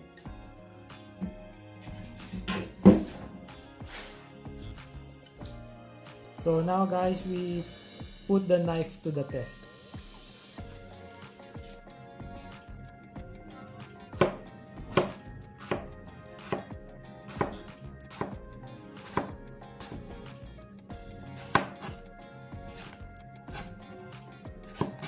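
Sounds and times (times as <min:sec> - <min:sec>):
knife tapping cutting board: 0:14.2 - 0:15.9, 0:21.4 - 0:21.9
knife slicing apple: 0:14.2 - 0:16.7, 0:17.3 - 0:18.4, 0:19.0 - 0:20.1, 0:21.3 - 0:22.0, 0:22.7 - 0:23.8, 0:24.6 - 0:25.0.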